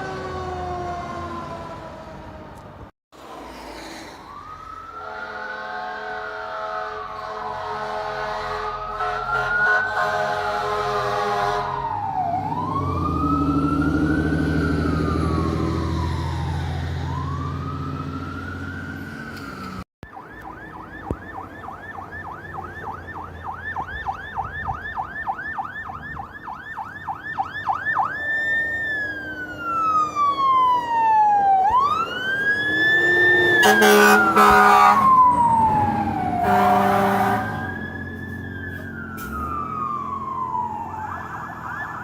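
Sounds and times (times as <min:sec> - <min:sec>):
engine and traffic rumble: 0:00.0 - 0:42.0
electronic siren wailing: 0:04.3 - 0:07.4, 0:08.3 - 0:19.3, 0:20.0 - 0:42.0
siren yelping: 0:11.3 - 0:19.4, 0:20.0 - 0:42.0.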